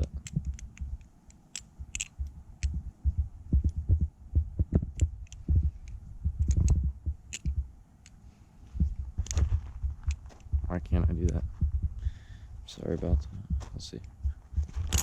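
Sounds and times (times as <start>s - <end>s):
dull low handling thumps: 0.0s - 1.0s, 1.7s - 7.8s, 8.7s - 15.0s
butterfly knife clicks and taps: 0.0s - 2.8s, 4.9s - 8.2s.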